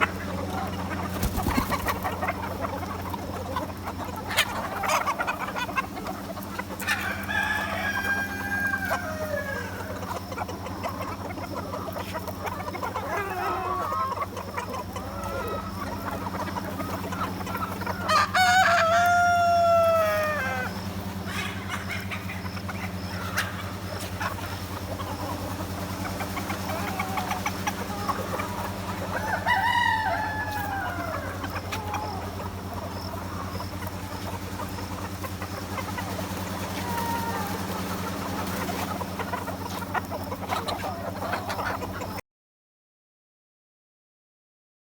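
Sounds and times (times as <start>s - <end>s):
chickens clucking: 0.0s - 42.2s
rooster crowing: 6.8s - 10.2s, 17.8s - 21.6s, 26.5s - 33.1s, 36.6s - 37.8s.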